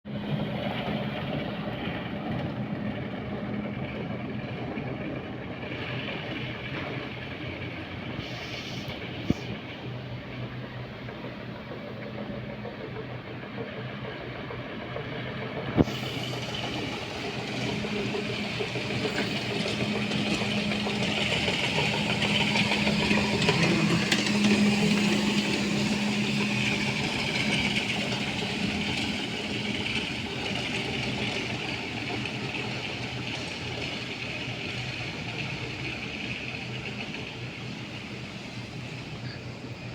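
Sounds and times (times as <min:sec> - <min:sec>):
floor scrubber humming and whirring: 0:15.8 - 0:39.9.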